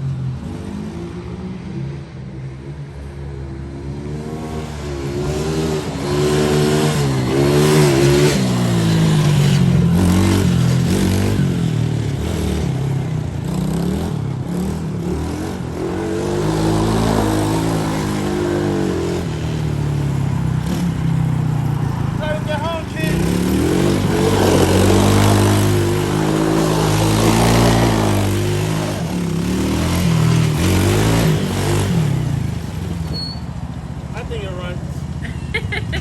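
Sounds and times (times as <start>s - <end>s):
small engine revving: 22.2s - 32.7s.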